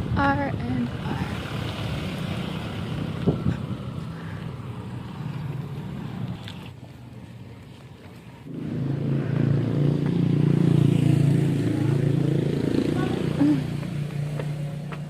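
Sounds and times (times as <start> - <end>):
vehicle engine running: 8.5 - 15.0.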